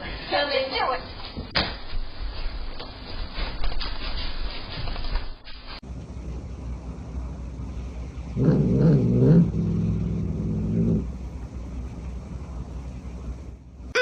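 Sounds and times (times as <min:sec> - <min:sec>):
steady low rumble: 0:05.8 - 0:13.9
animal low growl: 0:08.3 - 0:11.2.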